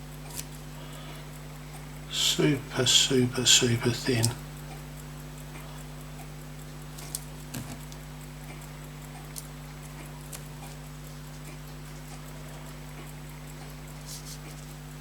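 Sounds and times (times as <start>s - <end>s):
low electrical hum: 0.0s - 15.0s
watch parts clicking: 0.2s - 0.7s, 4.2s - 14.9s.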